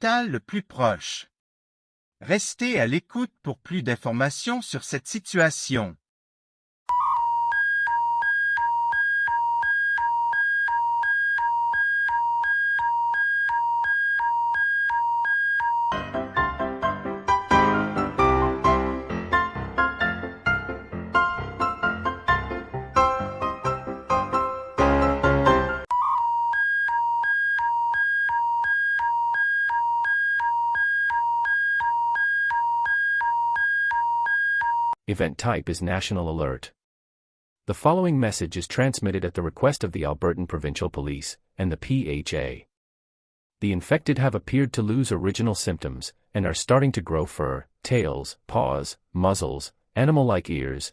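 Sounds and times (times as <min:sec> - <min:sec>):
electronic two-tone alert signal: 0:06.9 - 0:16.0, 0:25.9 - 0:34.9.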